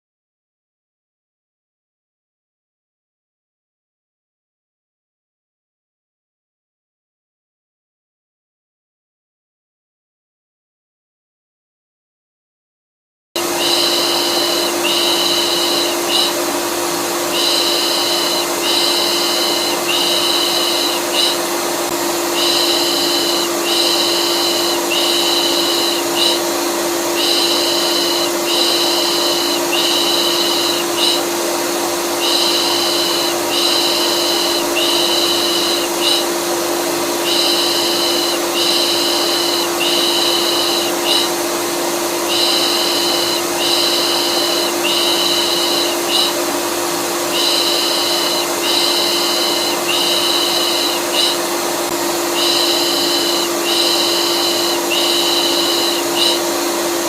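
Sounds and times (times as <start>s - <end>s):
vacuum cleaner running: 13.4s - 57.0s.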